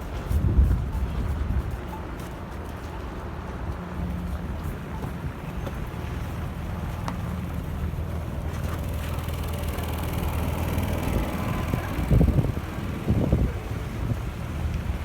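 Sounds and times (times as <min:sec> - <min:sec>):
wind buffeting microphone: 0:00.0 - 0:01.9, 0:10.4 - 0:15.0
tyre and road noise: 0:00.0 - 0:15.0
vehicle engine humming: 0:03.9 - 0:15.0.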